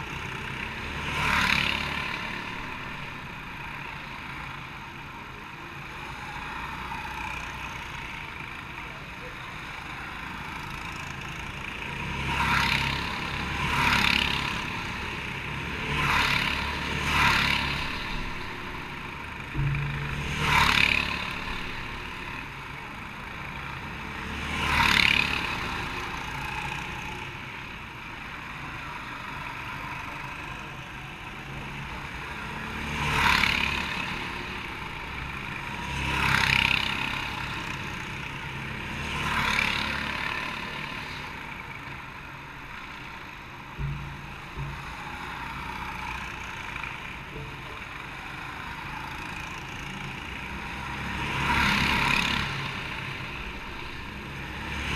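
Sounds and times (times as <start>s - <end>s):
go-karts passing: 0.0s - 54.9s
low engine rumble: 17.8s - 23.8s.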